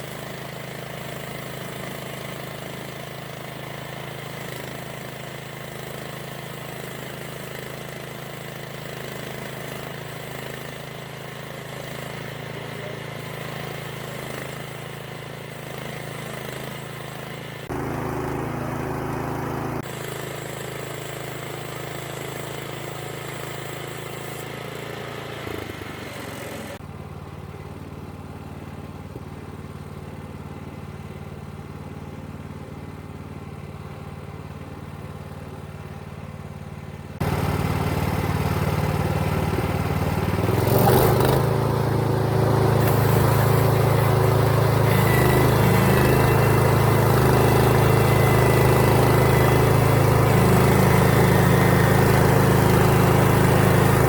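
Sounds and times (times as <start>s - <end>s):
engine humming: 17.6s - 19.9s, 35.9s - 54.0s.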